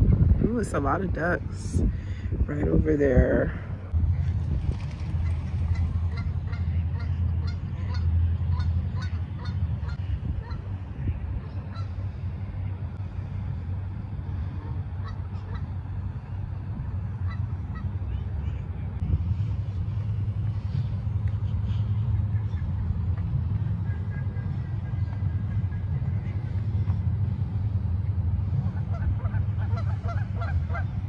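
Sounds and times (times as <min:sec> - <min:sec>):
steady low rumble: 0:00.0 - 0:31.0
waterfowl calling: 0:05.2 - 0:10.7, 0:11.7 - 0:12.0, 0:14.6 - 0:15.8, 0:28.6 - 0:31.0.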